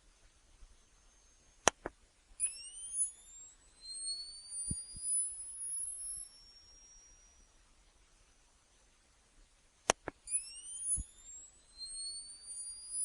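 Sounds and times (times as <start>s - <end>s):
flash charging whine: 0.0s - 8.5s, 9.9s - 13.0s
flash unit clicks: 1.6s - 3.1s, 9.8s - 13.0s.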